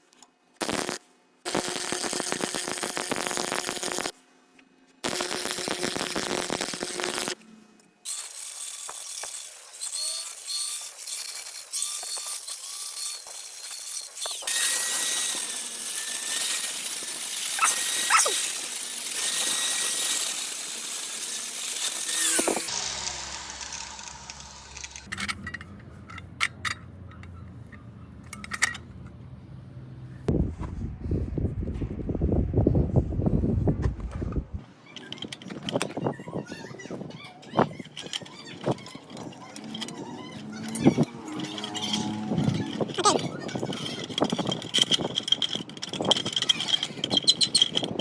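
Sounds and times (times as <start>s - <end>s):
power tools on metal: 0.6s - 4.1s, 5.0s - 7.4s, 8.1s - 25.1s, 37.5s - 48.0s.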